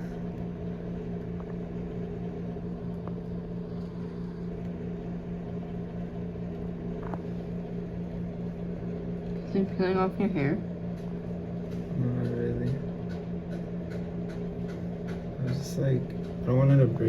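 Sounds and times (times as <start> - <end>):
appliance humming: 0.0 - 17.0.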